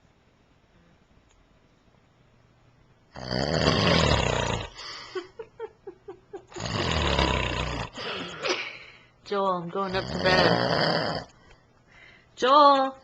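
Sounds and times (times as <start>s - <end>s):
man snoring: 3.1s - 4.8s, 6.5s - 8.4s, 9.9s - 11.3s.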